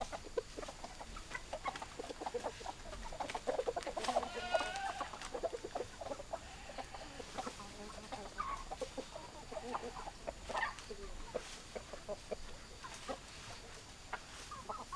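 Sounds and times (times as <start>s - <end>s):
hens clucking: 0.0s - 14.9s
hen drawn-out call: 4.0s - 11.0s.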